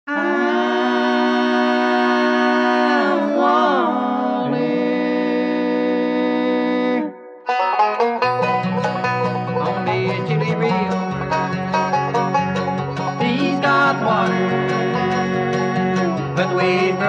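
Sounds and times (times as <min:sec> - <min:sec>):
vocal group singing in harmony: 0:00.1 - 0:07.4, 0:13.0 - 0:17.0
banjo: 0:06.6 - 0:17.0.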